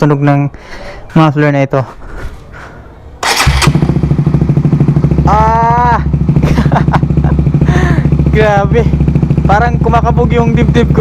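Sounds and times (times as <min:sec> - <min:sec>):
motorcycle engine starting and idling: 0:03.2 - 0:11.0.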